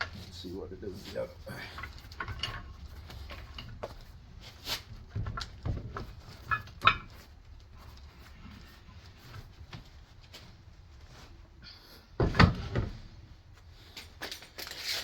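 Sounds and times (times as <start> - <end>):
metal parts clicking and clunking: 0.0 - 10.4.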